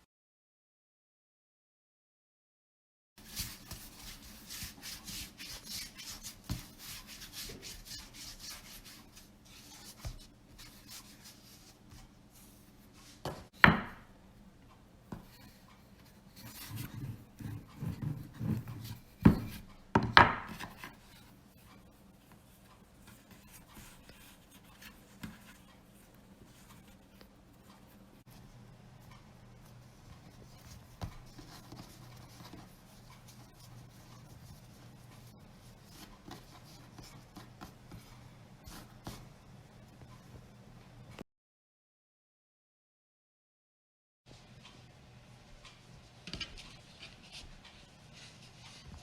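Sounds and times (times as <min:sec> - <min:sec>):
knocks on wooden surface: 0:13.3 - 0:14.0, 0:19.3 - 0:20.6
rubbing and scraping: 0:16.3 - 0:19.7.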